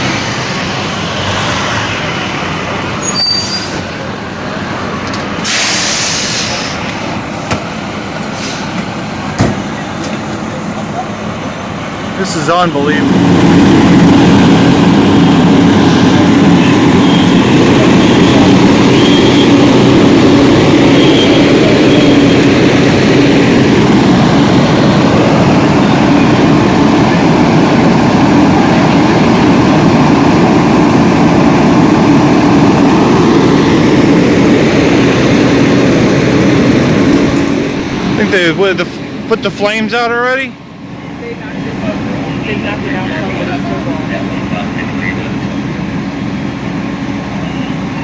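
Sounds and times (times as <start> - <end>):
large engine droning: 0.0 - 48.0.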